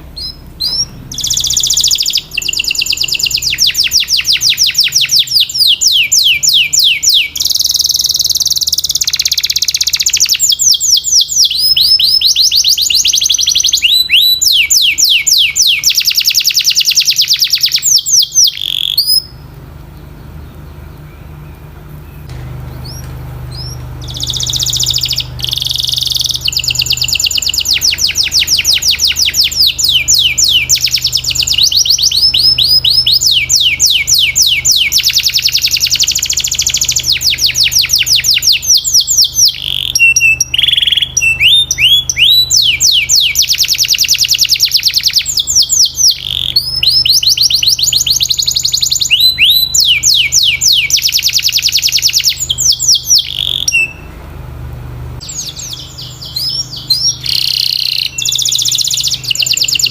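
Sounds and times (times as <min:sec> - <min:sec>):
canary singing fast trills: 0:00.0 - 0:54.2, 0:55.2 - 0:59.9
low steady hum: 0:00.0 - 0:59.9.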